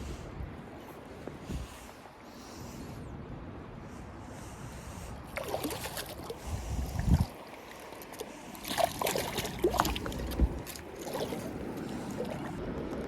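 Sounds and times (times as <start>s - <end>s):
water splashing and sloshing: 5.2s - 13.0s.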